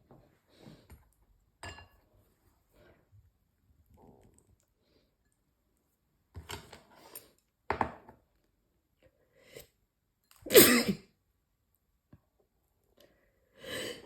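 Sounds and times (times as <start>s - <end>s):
person sneezing loudly: 10.5s - 11.0s.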